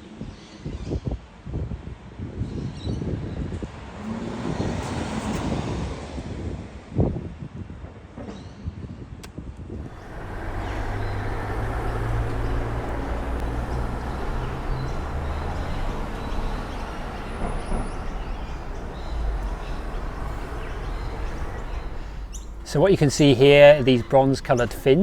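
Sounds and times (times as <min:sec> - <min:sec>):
heavy vehicle passing: 0:09.8 - 0:25.0.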